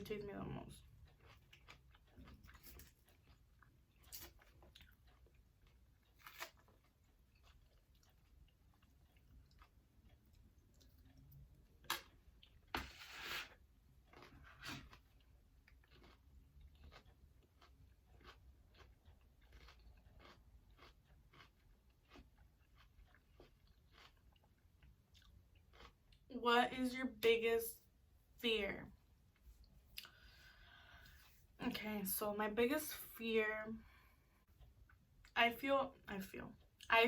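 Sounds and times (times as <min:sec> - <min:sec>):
person chewing crunchy food: 0:00.8 - 0:26.3.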